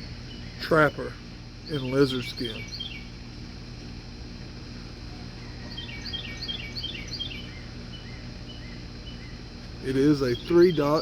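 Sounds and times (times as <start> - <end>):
songbird singing: 0.0 - 11.0
steady low hum: 0.0 - 11.0.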